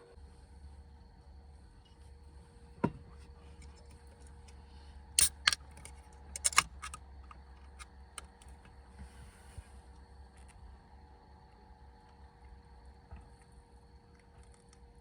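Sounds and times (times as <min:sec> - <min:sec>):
sharp clicks and knocks: 0:05.2 - 0:07.8.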